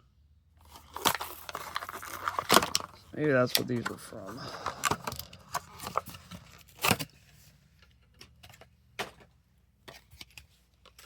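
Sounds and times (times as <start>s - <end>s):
plastic packaging crackling: 0.6s - 7.2s
plastic packaging snapping: 0.7s - 4.0s.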